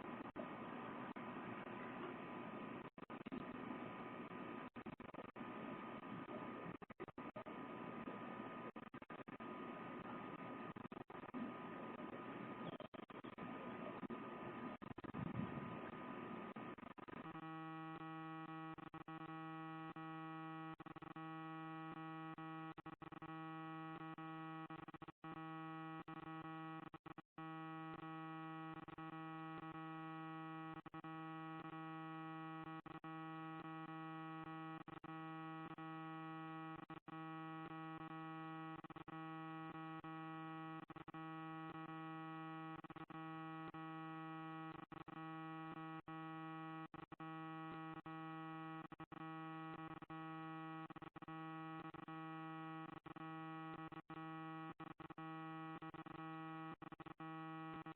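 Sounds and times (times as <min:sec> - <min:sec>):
steady electronic hum: 0:00.0 - 0:24.7.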